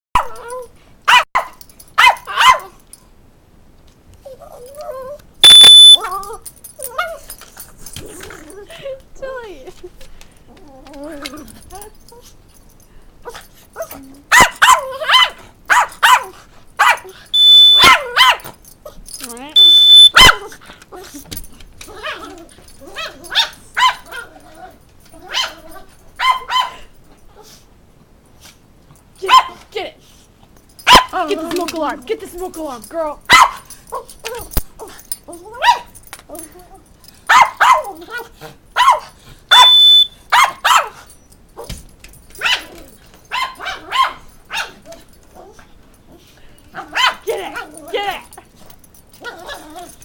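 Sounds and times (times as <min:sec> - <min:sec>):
puppy barking: 0:00.2 - 0:02.8, 0:05.4 - 0:06.0, 0:14.3 - 0:18.6, 0:19.6 - 0:20.6, 0:22.9 - 0:24.3, 0:25.2 - 0:26.9, 0:29.3 - 0:29.6, 0:30.8 - 0:31.2, 0:33.3 - 0:34.5, 0:35.5 - 0:35.9, 0:37.3 - 0:41.1, 0:42.4 - 0:44.8, 0:46.8 - 0:47.9
puppy whining: 0:04.2 - 0:12.4, 0:33.9 - 0:37.0, 0:39.5 - 0:40.1, 0:42.4 - 0:48.5, 0:49.1 - 0:50.0
smoke alarm beep: 0:05.4 - 0:06.0, 0:17.4 - 0:17.9, 0:19.6 - 0:20.2, 0:39.5 - 0:40.2.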